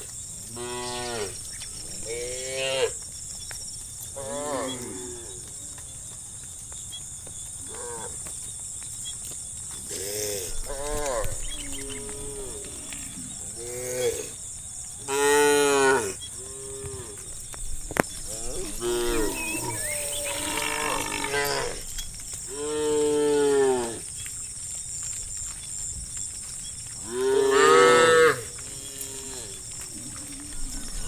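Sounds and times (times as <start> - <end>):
faint steady high hiss: 9.9 - 25.2
cattle mooing: 18.3 - 21.8.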